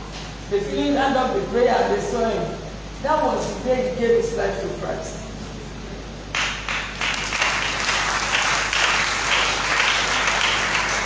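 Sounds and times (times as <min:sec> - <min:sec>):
congregation clapping: 0:06.3 - 0:11.0.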